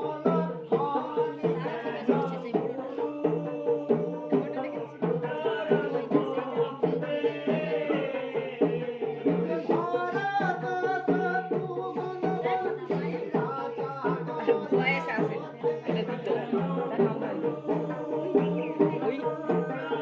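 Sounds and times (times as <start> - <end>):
hand drum beat: 0.0 - 20.0.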